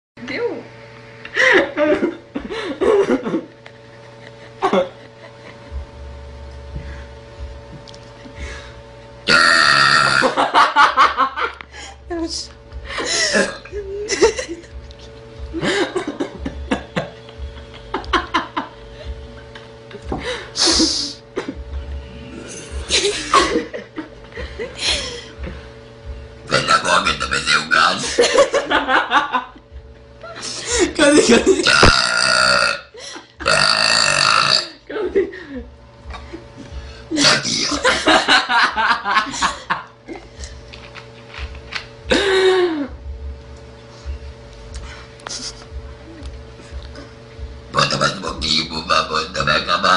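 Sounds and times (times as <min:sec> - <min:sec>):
people laughing: 0:01.3 - 0:05.7, 0:10.2 - 0:11.6, 0:12.9 - 0:14.8, 0:15.5 - 0:21.6, 0:22.9 - 0:25.4, 0:28.0 - 0:29.6, 0:30.2 - 0:31.7, 0:34.9 - 0:40.4
loud burp: 0:09.3 - 0:10.4, 0:31.6 - 0:34.8, 0:47.8 - 0:49.9.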